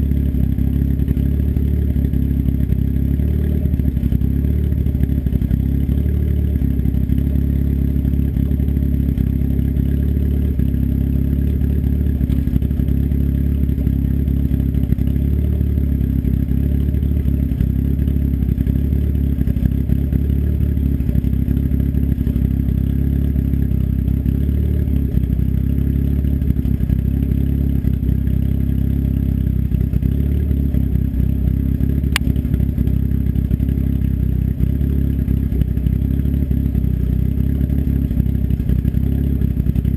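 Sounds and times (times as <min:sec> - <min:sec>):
car engine idling: 0:00.0 - 0:39.9
light tick: 0:32.1 - 0:32.3.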